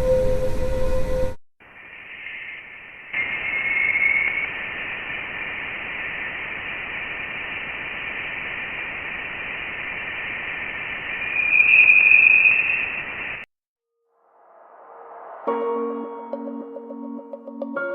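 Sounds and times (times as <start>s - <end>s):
faint steady tones: 1.6s - 13.5s
static hiss: 1.6s - 13.5s.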